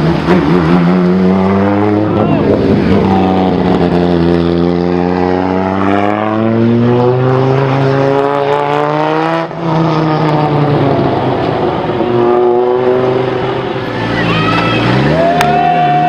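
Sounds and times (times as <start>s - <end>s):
rally car engine revving: 0.0s - 16.0s.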